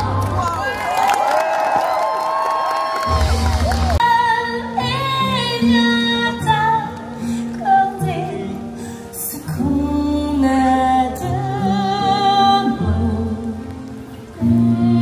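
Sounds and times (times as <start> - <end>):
woman singing: 4.0 - 15.0.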